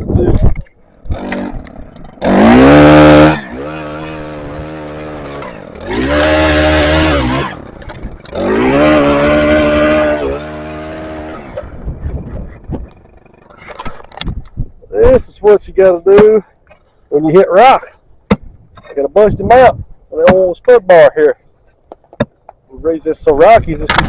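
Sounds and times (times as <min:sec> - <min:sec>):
small engine revving: 0:01.0 - 0:14.2.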